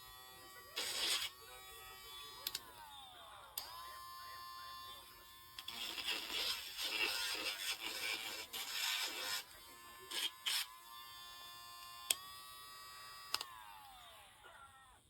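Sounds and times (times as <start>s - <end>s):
nail grinder motor whirring: 0.0s - 15.0s
grinding on a dog's nail: 5.6s - 9.5s, 10.1s - 10.7s.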